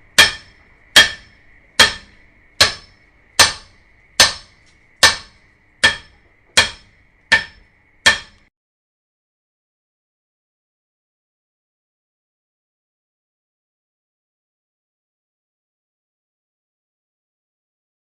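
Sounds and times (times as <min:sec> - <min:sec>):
hammer blows ringing: 0:00.0 - 0:08.5.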